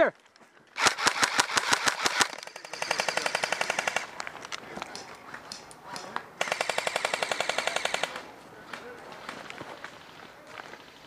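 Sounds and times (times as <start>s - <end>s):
airsoft guns firing: 0.8s - 4.2s, 6.4s - 8.3s.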